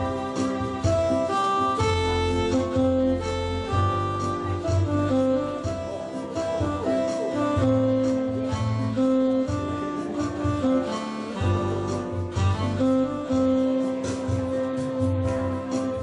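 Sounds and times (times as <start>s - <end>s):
live guitar music: 0.0s - 16.0s
steady bass: 0.0s - 16.0s.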